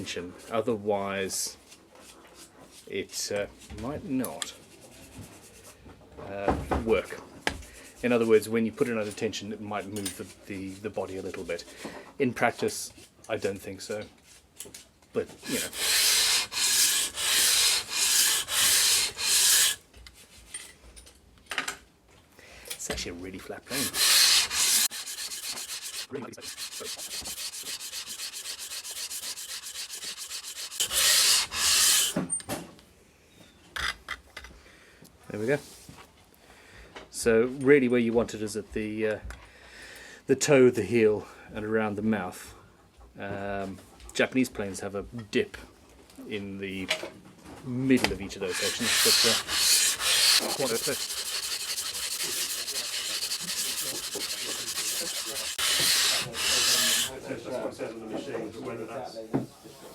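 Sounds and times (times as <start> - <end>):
hand plane sole scraping on abrasive: 15.4 - 19.8, 23.7 - 32.2, 48.4 - 57.2.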